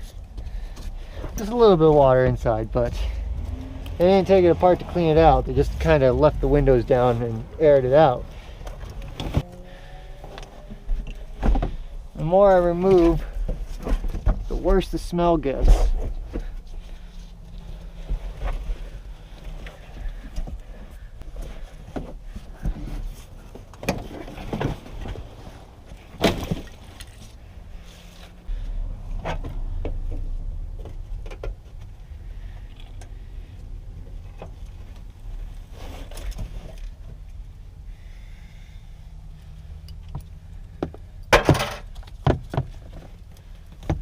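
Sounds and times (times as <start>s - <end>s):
low rumble: 0.0s - 12.2s
car trim clunks and rattles: 40.1s - 44.0s.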